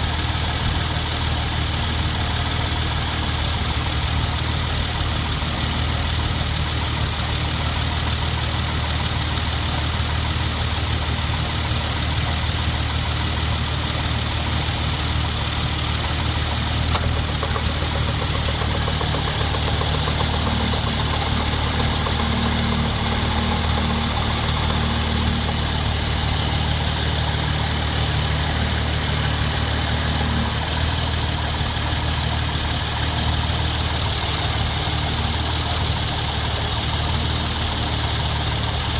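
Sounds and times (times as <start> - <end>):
car engine idling: 0.0 - 38.9
knocking: 16.9 - 25.8.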